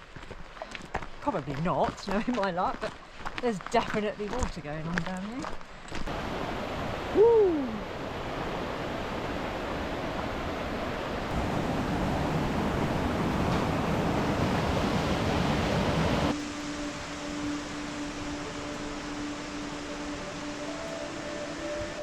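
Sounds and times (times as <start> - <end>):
waterfall roaring: 6.1 - 22.0
person shouting woo: 7.1 - 7.8.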